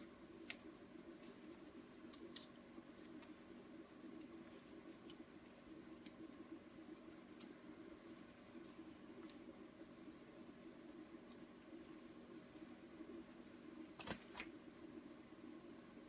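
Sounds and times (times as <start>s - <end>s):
faint small clicks and ticks: 0.0s - 3.4s, 4.2s - 6.4s.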